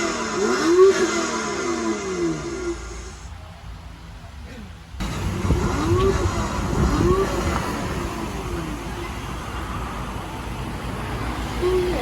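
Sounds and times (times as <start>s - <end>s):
electric motors and gearboxes running: 5.0s - 8.6s.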